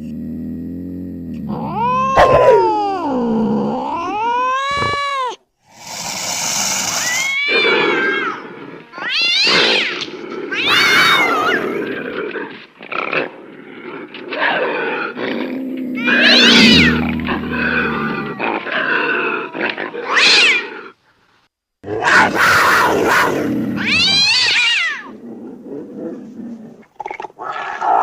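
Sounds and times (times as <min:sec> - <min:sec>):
deep growl: 0:00.0 - 0:04.1, 0:15.1 - 0:19.5
cat calls sweeping in pitch: 0:16.0 - 0:18.4.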